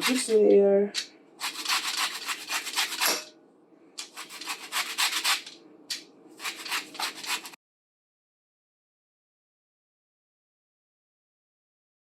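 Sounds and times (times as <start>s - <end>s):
lemon peel zested on grater: 1.4s - 3.2s, 4.0s - 5.6s, 6.4s - 7.6s.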